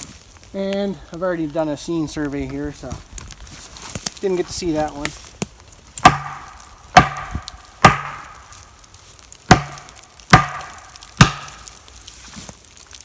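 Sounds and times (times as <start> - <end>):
tool knocking on tree trunk: 6.0 - 8.3, 9.5 - 11.6.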